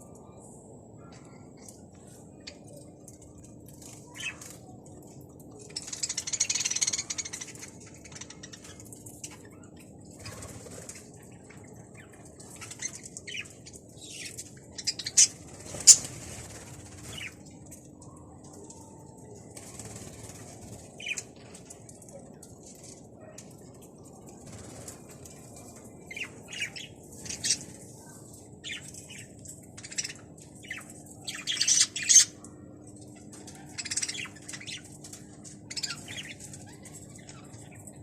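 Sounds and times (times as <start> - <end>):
faint steady hum: 0.0 - 38.0
birds flapping wings: 19.5 - 22.1.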